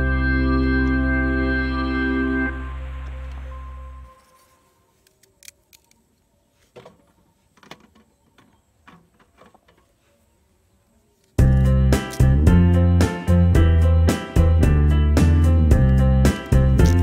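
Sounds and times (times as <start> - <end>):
background music: 0.0 - 4.6, 11.4 - 17.0.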